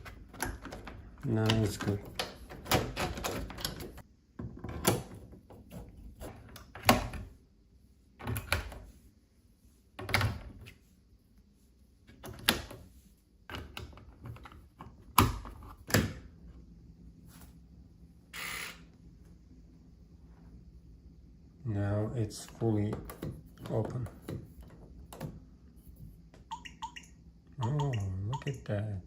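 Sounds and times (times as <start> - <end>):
knocks and clicks of lock parts: 0.0 - 5.4.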